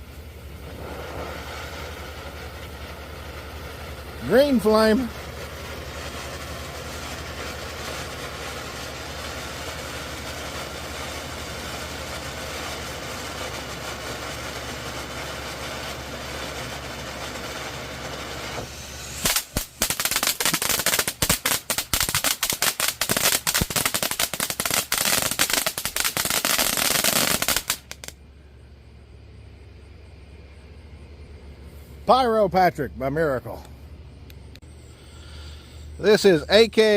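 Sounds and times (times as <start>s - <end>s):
firework fountain hissing: 0.0s - 29.0s, 34.5s - 36.9s
crackling pops: 0.6s - 28.2s.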